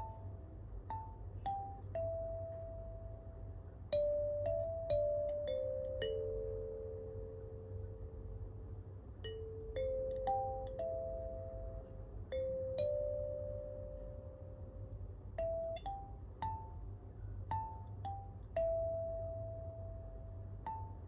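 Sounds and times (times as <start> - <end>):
kalimba melody: 0.0 - 21.0
steady low hum: 0.0 - 21.0.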